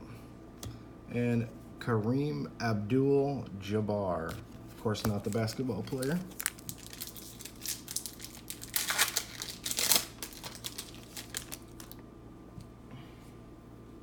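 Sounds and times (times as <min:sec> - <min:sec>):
trading cards and wrapper crinkling: 0:04.3 - 0:12.0.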